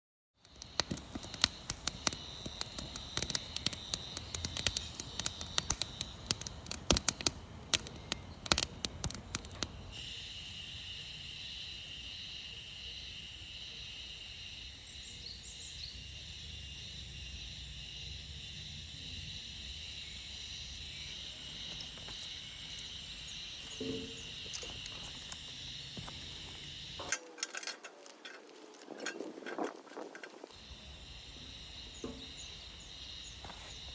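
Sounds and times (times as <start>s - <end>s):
sharp crackling clicks: 0.4s - 10.0s, 21.7s - 30.6s
insects chirping: 0.4s - 33.9s.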